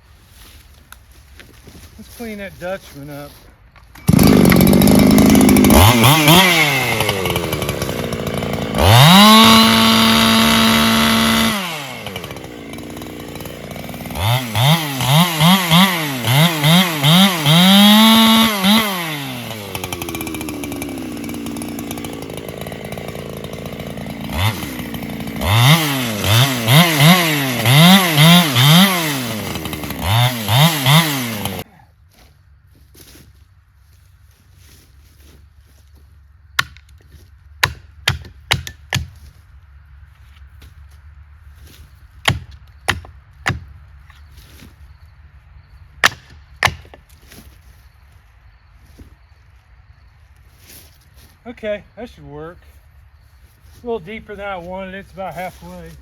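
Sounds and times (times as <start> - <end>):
chainsaw revving: 4.0 - 31.7, 53.8 - 56.0.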